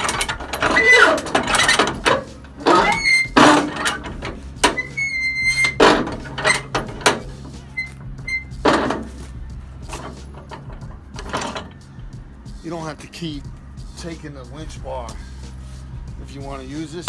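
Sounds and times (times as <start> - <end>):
metal knocks: 0.0 - 11.9.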